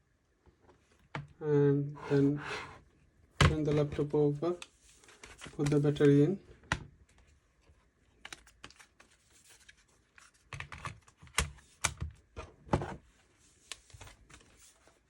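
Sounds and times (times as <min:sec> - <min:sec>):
plastic clicks and knocks of laptop: 0:10.4 - 0:12.6.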